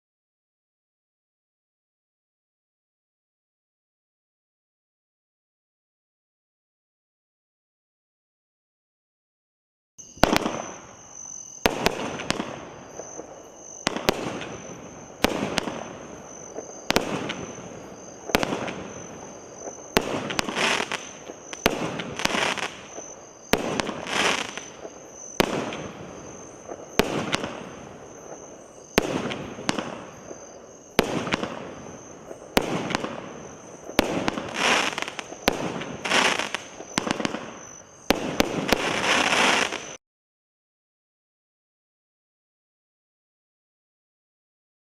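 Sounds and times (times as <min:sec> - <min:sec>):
firework bangs: 0:10.1 - 0:40.0
firework hissing crackle: 0:10.1 - 0:40.0.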